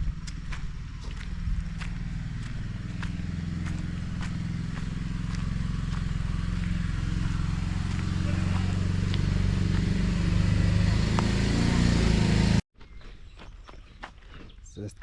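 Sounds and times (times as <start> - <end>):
footsteps walking: 0.0 - 10.0
vehicle engine running: 0.0 - 12.6.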